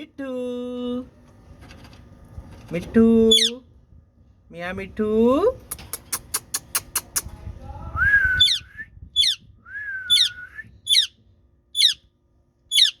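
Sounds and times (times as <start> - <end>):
parakeet calling: 3.3 - 3.6, 9.2 - 9.4, 10.1 - 11.2, 11.8 - 12.0, 12.7 - 13.0.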